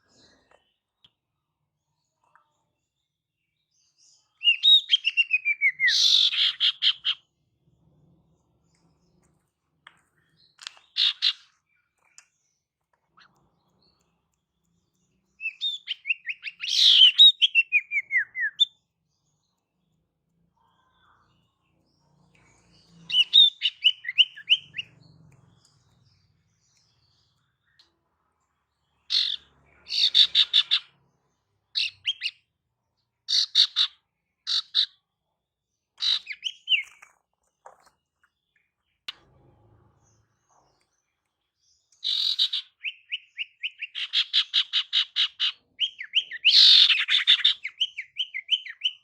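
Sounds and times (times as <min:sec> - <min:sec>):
bird chattering calls: 0:29.1 - 0:30.9.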